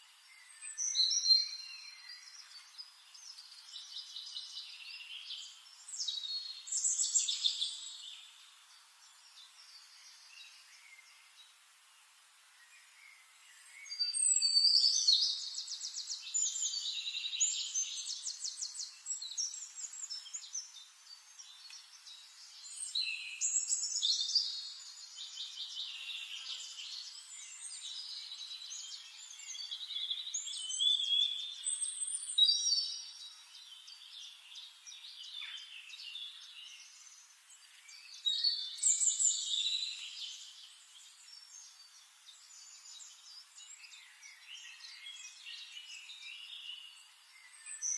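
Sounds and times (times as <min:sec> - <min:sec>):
songbirds warbling and trilling: 0:00.0 - 0:47.9.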